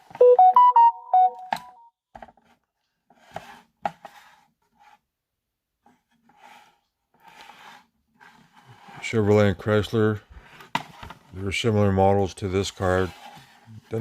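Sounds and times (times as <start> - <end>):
electronic beeping tune: 0.2 - 1.8.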